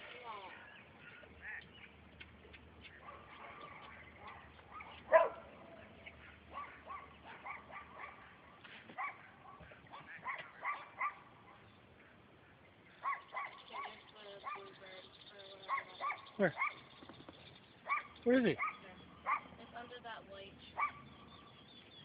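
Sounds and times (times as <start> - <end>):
dog barking in short yips: 4.7 - 5.4.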